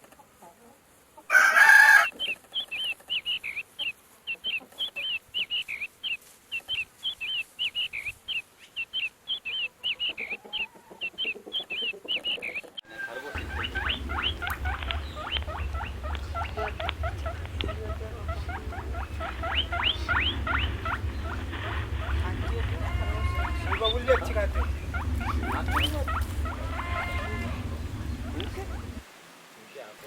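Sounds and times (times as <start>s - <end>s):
bird chirping: 2.0s - 29.0s
small animals squeaking: 8.9s - 29.0s
steady low hum: 13.3s - 29.0s.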